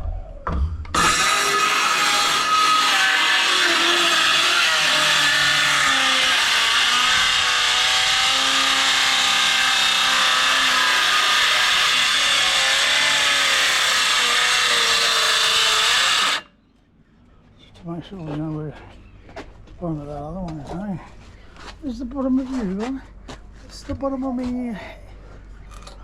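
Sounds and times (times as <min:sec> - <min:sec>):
power saw cutting wood: 0:01.0 - 0:16.5.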